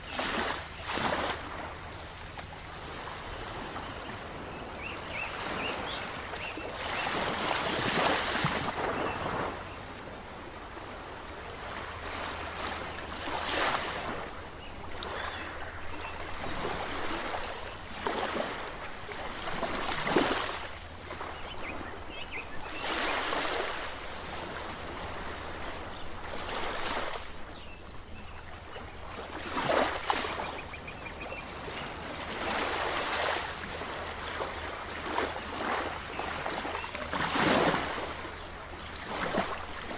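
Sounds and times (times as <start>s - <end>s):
ocean waves breaking: 0.0s - 39.9s.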